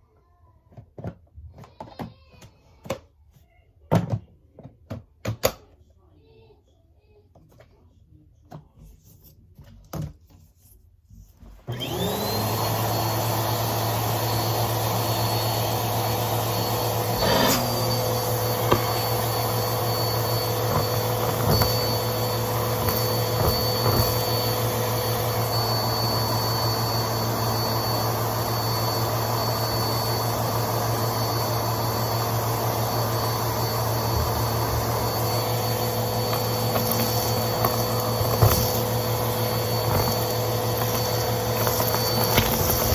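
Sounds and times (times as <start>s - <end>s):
vacuum cleaner motor whine: 11.6s - 42.9s.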